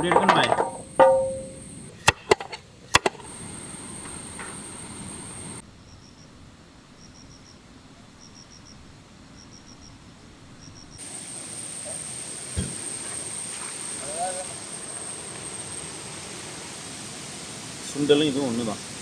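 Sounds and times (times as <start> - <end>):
insect chirps: 0.0 - 2.0, 2.9 - 19.0
sharp knocks: 0.0 - 3.2
steady hiss: 0.0 - 19.0.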